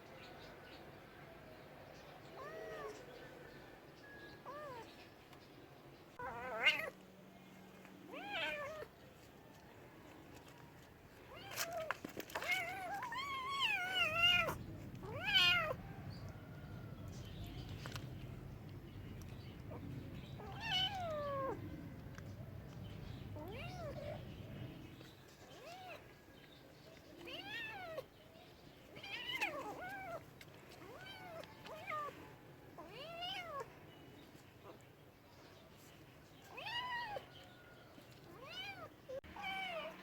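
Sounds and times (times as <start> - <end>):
cat meowing: 2.4 - 3.0, 6.2 - 7.0, 8.1 - 8.9, 11.3 - 15.8, 20.4 - 21.6, 23.4 - 24.2, 32.8 - 33.7, 36.5 - 37.3, 38.3 - 40.0.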